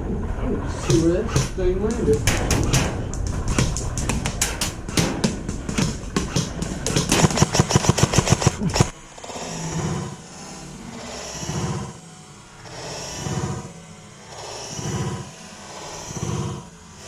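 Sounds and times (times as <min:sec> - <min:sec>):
airsoft gunfire: 0:00.8 - 0:10.1.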